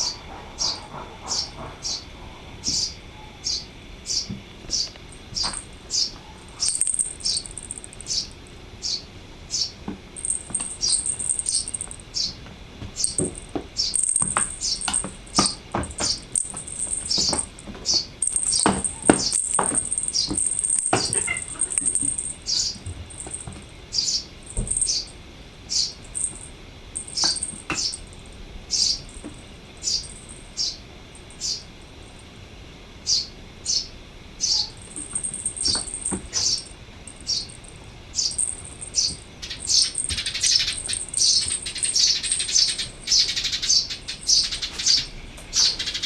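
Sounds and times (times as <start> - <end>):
small bird chirping: 0.0 - 2.0, 2.6 - 12.4, 13.0 - 26.4, 27.0 - 28.1, 28.7 - 30.8, 31.4 - 31.7, 33.0 - 37.6, 38.2 - 46.0
thin high trill: 13.0 - 28.1.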